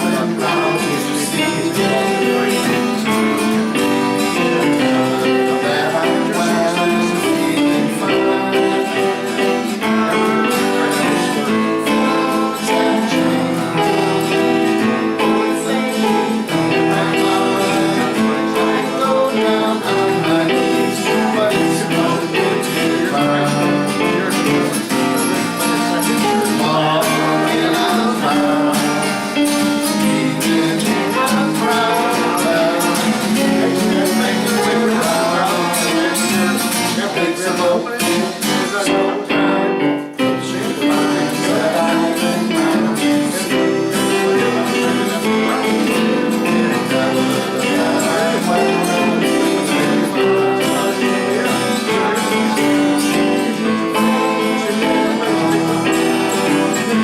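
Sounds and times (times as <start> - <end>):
band music with strummed guitars: 0.0 - 57.0.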